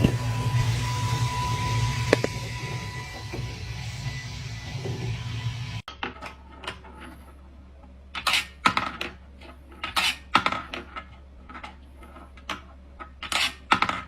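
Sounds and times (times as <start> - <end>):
steady low hum: 0.0 - 6.5.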